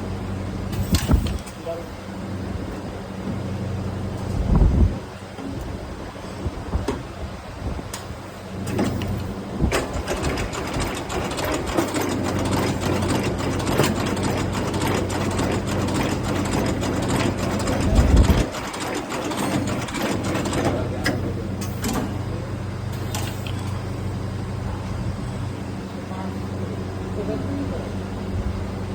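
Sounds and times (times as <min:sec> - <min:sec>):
machine electric hum: 0:00.0 - 0:28.9
rapid clicking and rattling: 0:08.7 - 0:22.1.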